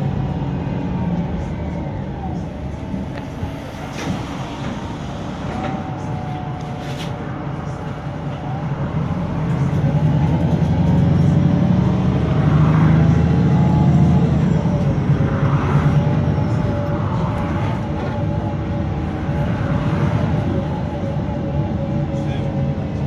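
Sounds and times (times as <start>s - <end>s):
bus engine running: 0.0s - 23.0s.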